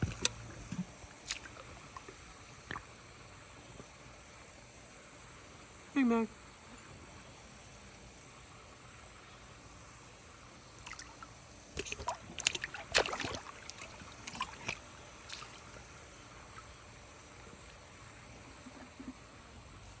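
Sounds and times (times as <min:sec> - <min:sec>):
water splashing and sloshing: 0:00.0 - 0:04.3, 0:10.2 - 0:20.0.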